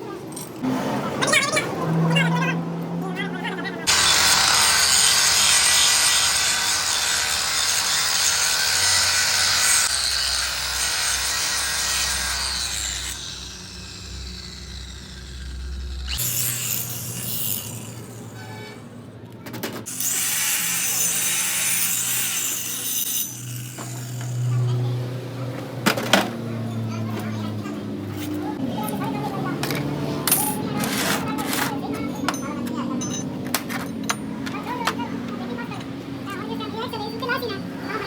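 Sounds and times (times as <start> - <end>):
power tool working metal: 3.9 - 18.6, 19.9 - 24.9
low hum: 12.1 - 18.4.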